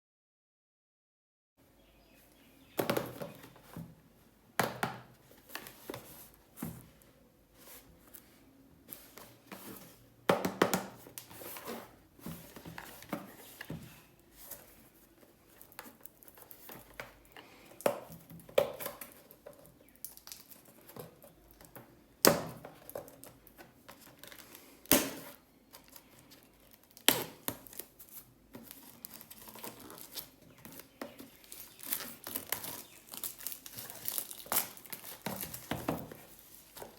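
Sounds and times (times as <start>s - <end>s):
plastic wrappers crinkling: 14.5s - 21.8s, 22.8s - 36.9s.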